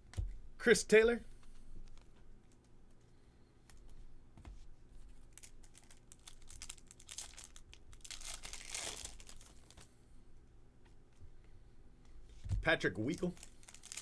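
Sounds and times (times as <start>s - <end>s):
card pack wrapper crinkling and tearing: 5.3s - 9.9s, 13.1s - 14.0s.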